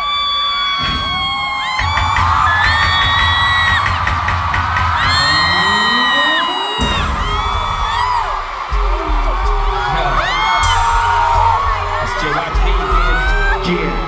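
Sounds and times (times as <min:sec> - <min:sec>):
heavy bass: 0:01.8 - 0:06.0, 0:06.8 - 0:14.0
gliding whooping high sounds: 0:05.2 - 0:14.0.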